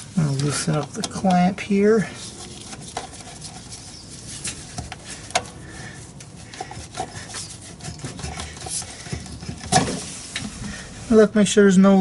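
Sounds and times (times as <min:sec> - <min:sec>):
tools clicking and tapping: 0:06.5 - 0:09.8.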